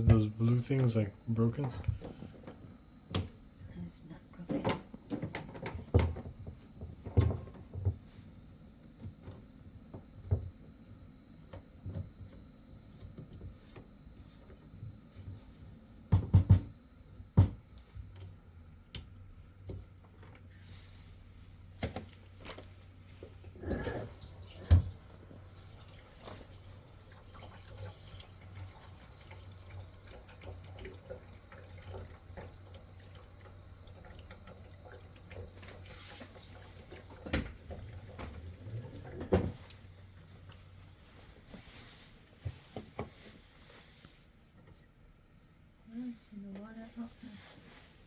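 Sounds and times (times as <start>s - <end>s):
knocks and clunks of plastic drain pipes: 4.5s - 8.0s, 16.1s - 17.7s
water running in sink: 21.7s - 41.9s.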